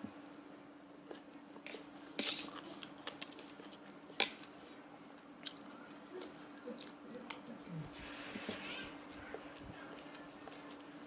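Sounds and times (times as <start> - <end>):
soft chewing: 0.2 - 11.0.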